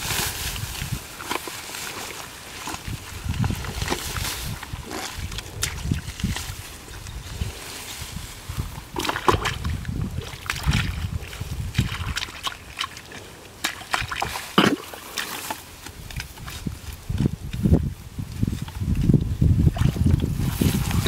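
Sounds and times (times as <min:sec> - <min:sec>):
splashing in muddy water: 0:00.0 - 0:06.7, 0:08.6 - 0:16.6, 0:19.6 - 0:21.0.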